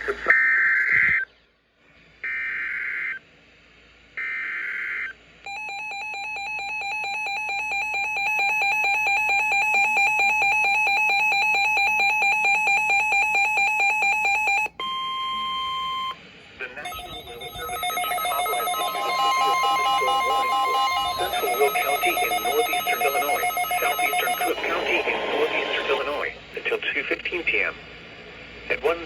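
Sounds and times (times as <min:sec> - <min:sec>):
two-tone attention signal: 0:14.8 - 0:16.2, 0:16.8 - 0:24.9
digital header data bursts: 0:16.8 - 0:25.5.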